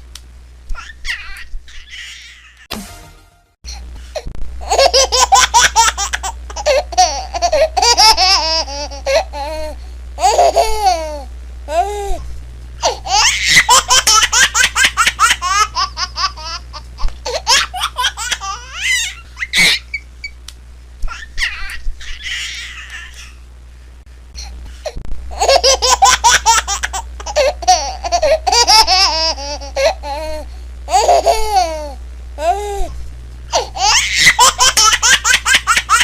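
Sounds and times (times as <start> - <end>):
steady low hum: 0.0 - 36.0
baby laughing: 4.6 - 11.9, 12.8 - 20.0, 21.1 - 23.4, 25.3 - 32.6, 33.5 - 36.0.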